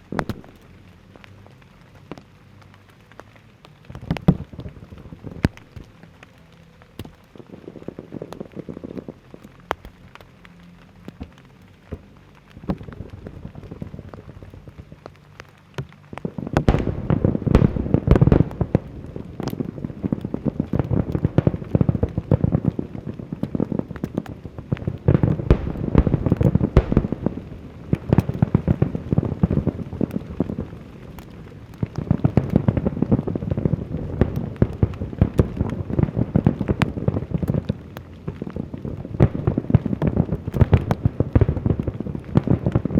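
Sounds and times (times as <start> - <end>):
fireworks crackling: 0.0 - 42.9
heavy firework bursts: 16.3 - 42.9.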